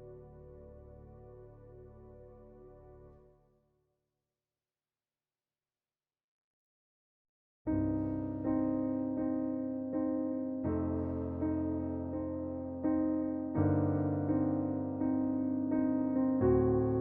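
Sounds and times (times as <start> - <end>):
soft keyboard chords: 0.0 - 3.3, 7.7 - 17.0.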